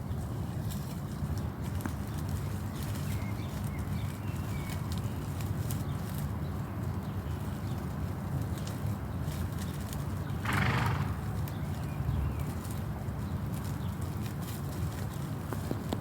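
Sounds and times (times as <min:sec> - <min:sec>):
faint rustling clicks: 0:12.4 - 0:16.0.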